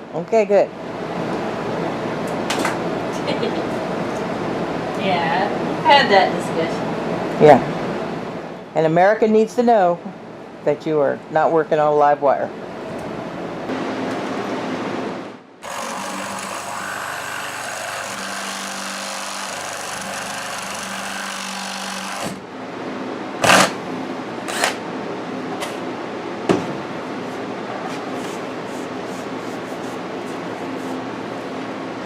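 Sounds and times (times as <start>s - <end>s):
small power tool running: 15.6s - 22.4s.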